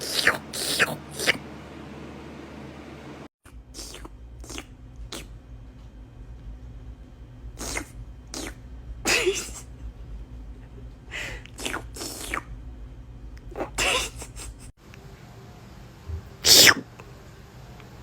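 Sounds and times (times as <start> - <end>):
person making wet slurping noises: 0.0 - 1.4, 3.5 - 5.3, 7.6 - 9.7, 11.2 - 12.5, 16.4 - 16.9.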